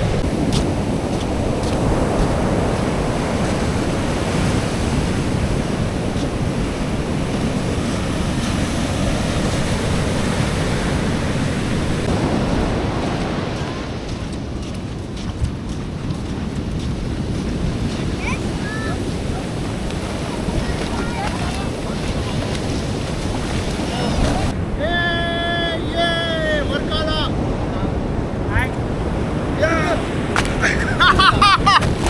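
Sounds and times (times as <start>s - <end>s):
sea surf washing onto beach: 0.0s - 32.0s
wind rumbling on microphone: 0.0s - 32.0s.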